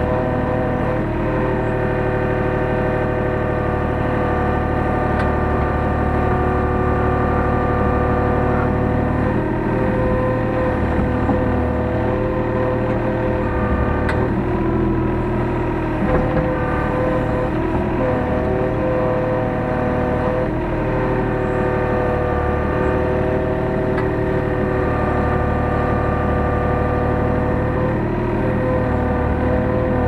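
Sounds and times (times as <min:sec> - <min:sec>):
excavator diesel engine under load: 0:00.0 - 0:30.0
hydraulic whining tones: 0:07.9 - 0:20.5.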